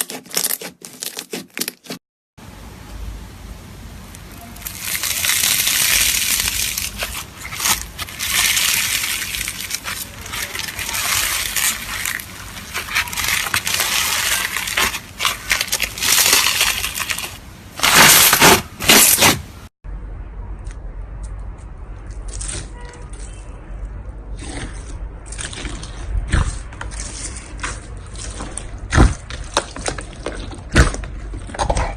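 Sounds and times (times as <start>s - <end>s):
slime squished by hand: 4.6s - 19.4s.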